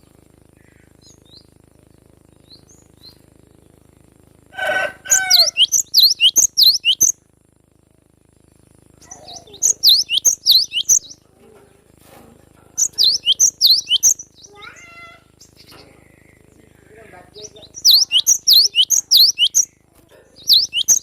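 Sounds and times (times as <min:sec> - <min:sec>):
bird chirping rapidly: 0:00.6 - 0:01.6, 0:04.6 - 0:07.2, 0:09.0 - 0:11.2, 0:12.8 - 0:16.6, 0:17.3 - 0:19.8, 0:20.4 - 0:21.0.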